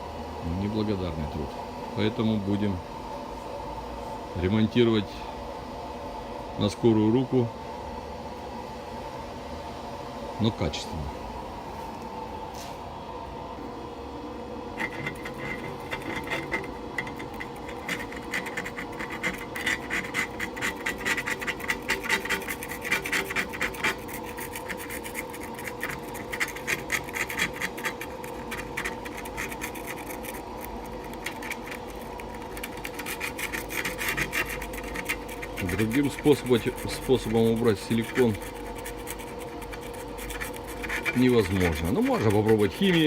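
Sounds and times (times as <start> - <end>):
faint steady hum: 0.0 - 43.0
razor blade scraping glass: 14.8 - 43.0.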